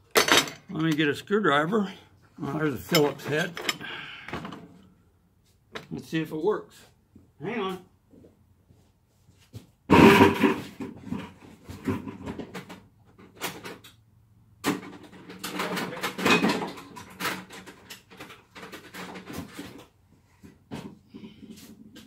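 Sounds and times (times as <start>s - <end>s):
hand tools clattering: 2.8s - 4.7s.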